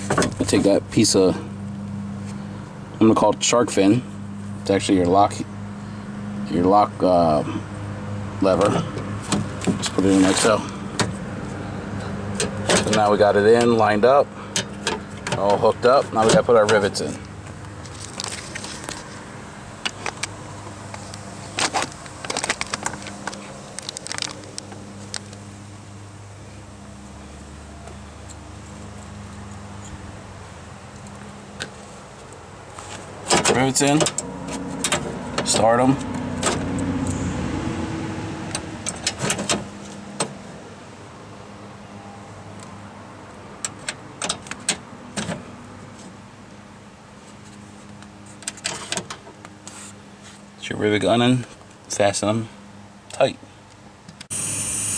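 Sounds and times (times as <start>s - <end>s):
small parts clicking and rattling: 20.9s - 25.4s.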